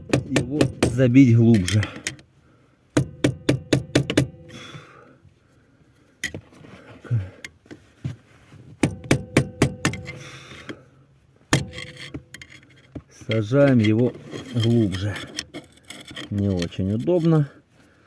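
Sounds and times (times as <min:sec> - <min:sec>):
hammer striking metal: 0:03.0 - 0:04.5, 0:08.8 - 0:10.2.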